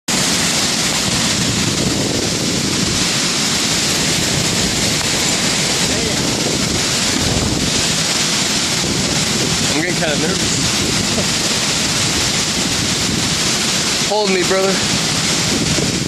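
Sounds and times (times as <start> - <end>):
strong wind and rain: 0.1 - 16.0
wind buffeting microphone: 0.1 - 16.0.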